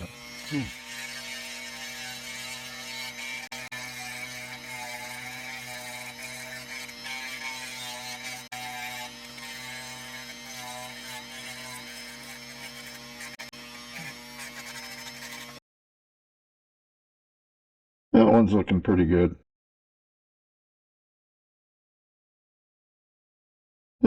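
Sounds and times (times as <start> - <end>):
sanding tool grinding stone: 0.0 - 15.6.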